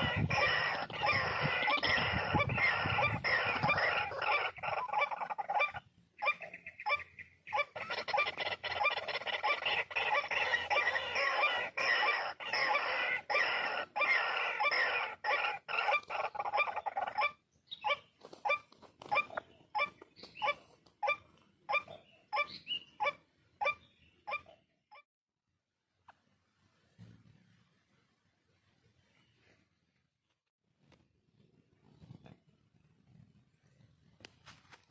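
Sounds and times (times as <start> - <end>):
waterhens calling harshly: 0.0 - 24.5.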